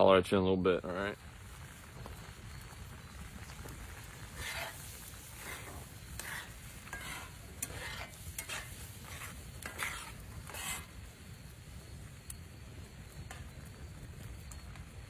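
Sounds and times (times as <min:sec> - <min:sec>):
utensil scraping a cooking pan: 0:03.5 - 0:11.3.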